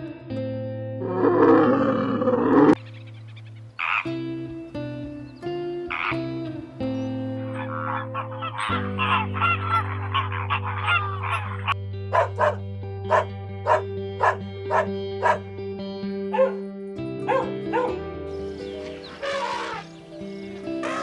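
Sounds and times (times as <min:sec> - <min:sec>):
soft background music: 0:00.0 - 0:21.0
animal calls: 0:01.1 - 0:04.3, 0:05.9 - 0:06.3, 0:07.4 - 0:15.4, 0:16.3 - 0:16.6, 0:17.3 - 0:18.0, 0:18.7 - 0:20.0, 0:20.8 - 0:21.0.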